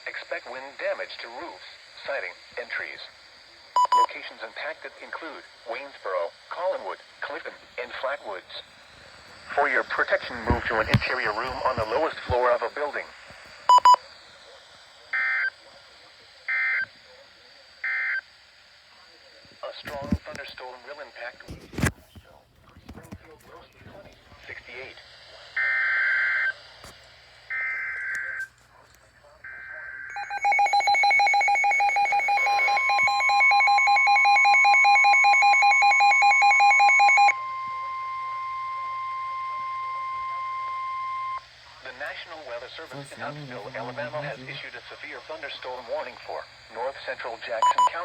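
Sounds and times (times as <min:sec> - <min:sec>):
steady alarm tone: 0:07.5 - 0:14.0, 0:29.4 - 0:41.5.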